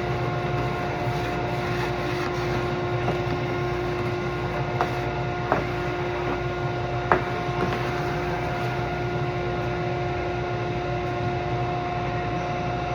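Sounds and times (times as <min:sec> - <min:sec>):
steady machine hum: 0:00.0 - 0:12.9.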